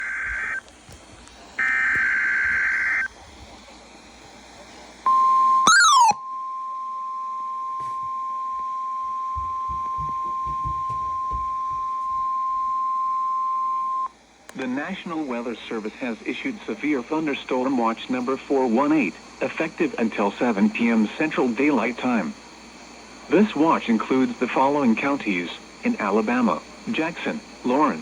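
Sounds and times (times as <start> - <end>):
steady warning tone: 5.1 - 6.2.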